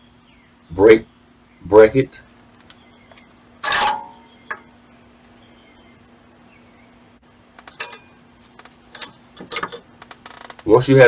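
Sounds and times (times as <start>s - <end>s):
small metal clicks: 3.1s - 4.7s, 7.6s - 10.6s
sharp metal clank: 3.6s - 4.7s, 7.6s - 8.2s, 9.0s - 9.8s.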